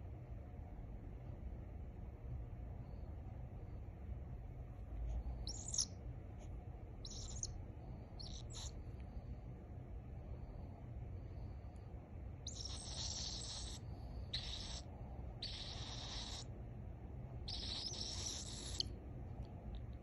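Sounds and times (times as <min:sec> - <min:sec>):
steady low hum: 0:00.0 - 0:20.0
pet bird chattering raspily: 0:05.4 - 0:05.9, 0:07.0 - 0:07.5, 0:08.2 - 0:08.8, 0:12.4 - 0:16.4, 0:17.5 - 0:18.9.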